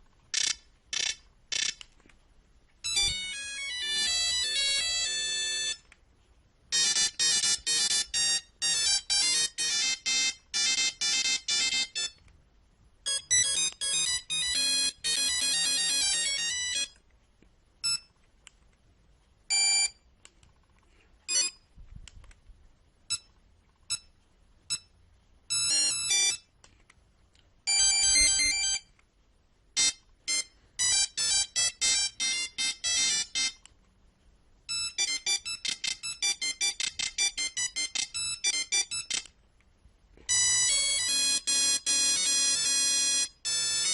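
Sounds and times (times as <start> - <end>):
monophonic phone ringtones: 2.8 - 5.8, 6.7 - 12.2, 13.1 - 17.0, 19.5 - 20.0, 21.3 - 21.6, 25.5 - 26.5, 27.7 - 28.9, 29.8 - 33.6, 34.7 - 39.2, 40.3 - 43.9.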